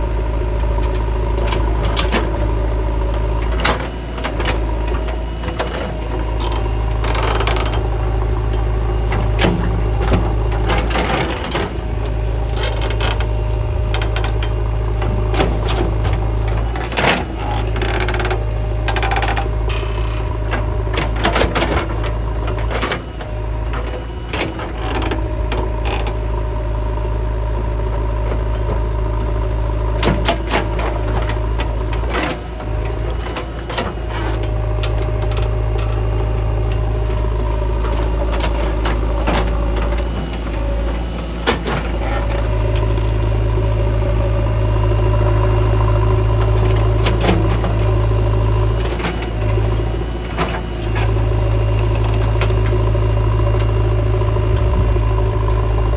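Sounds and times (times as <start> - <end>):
diesel engine running: 0.0 - 55.9.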